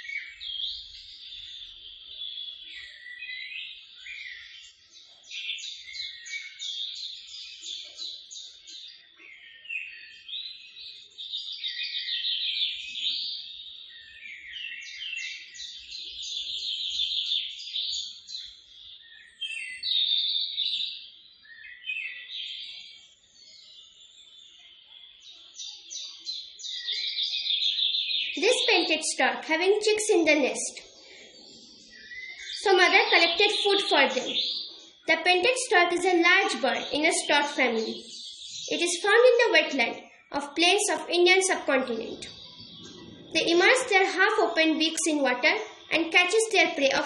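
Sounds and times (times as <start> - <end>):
chorus of chirping birds: 0.0 - 47.0.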